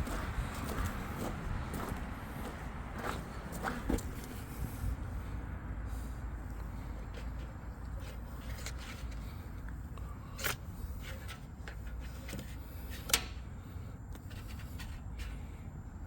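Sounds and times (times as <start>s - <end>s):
steady low rumble: 0.0s - 11.7s.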